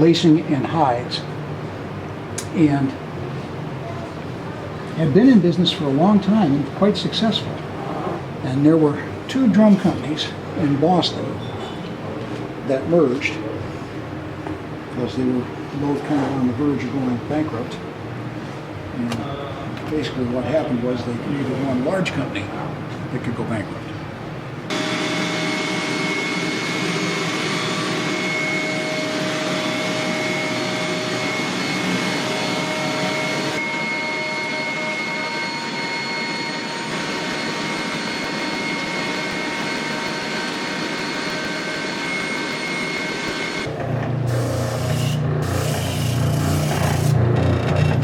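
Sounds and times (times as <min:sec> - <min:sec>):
power tool whirring with whine: 0:24.7 - 0:43.7, 0:44.3 - 0:48.0.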